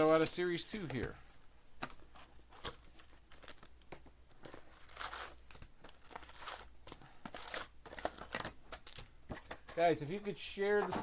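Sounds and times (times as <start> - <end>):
card pack wrapper crinkling: 1.8 - 9.1.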